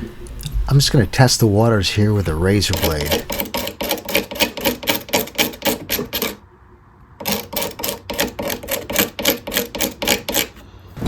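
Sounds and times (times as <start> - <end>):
razor blade scraping filler: 2.6 - 6.4, 7.2 - 10.6.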